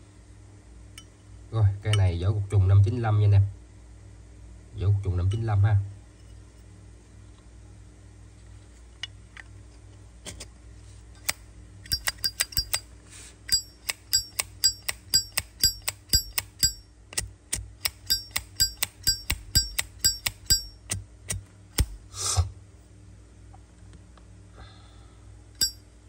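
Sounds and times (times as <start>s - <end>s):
metal lighter lid clicking: 11.2s - 12.8s, 13.5s - 22.0s.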